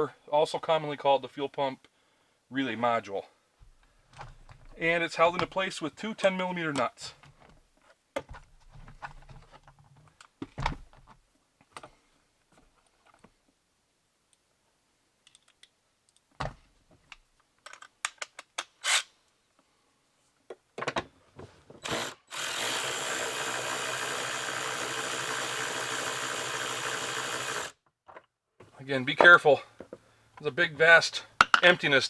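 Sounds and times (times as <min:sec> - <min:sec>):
cordless power tool motor running: 0:21.8 - 0:27.8.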